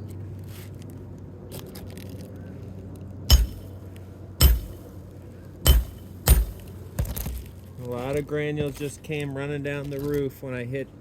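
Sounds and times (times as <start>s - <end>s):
hammer striking metal tool: 3.3s - 3.8s, 4.4s - 4.9s, 5.6s - 6.8s.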